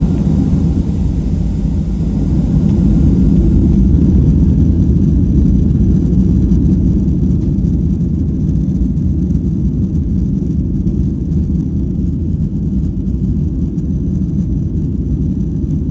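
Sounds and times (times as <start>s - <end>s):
jet airliner cabin rumble: 0.0s - 6.5s.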